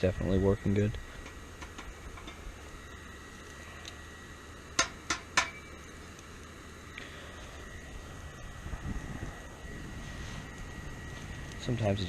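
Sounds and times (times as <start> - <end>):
camp stove fan humming: 0.0 - 12.0
fire ticking: 0.8 - 7.2, 9.4 - 12.0.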